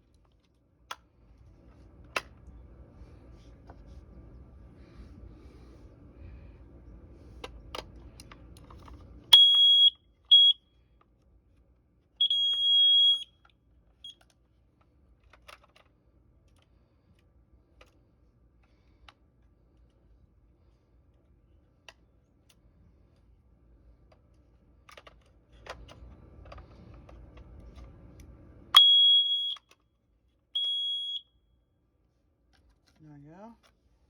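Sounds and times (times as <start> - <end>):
alarm beeping: 9.4 - 10.6, 12.2 - 13.3, 28.8 - 29.6, 30.6 - 31.3.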